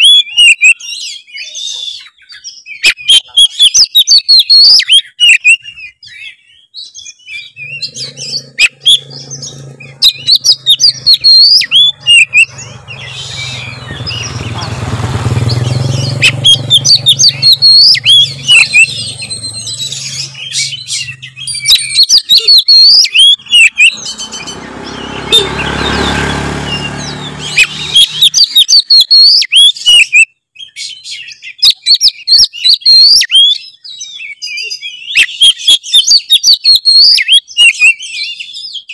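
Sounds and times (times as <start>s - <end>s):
bird singing whistled phrases: 0.0s - 14.8s, 15.4s - 38.9s
low motor hum: 7.6s - 21.9s, 23.3s - 28.6s.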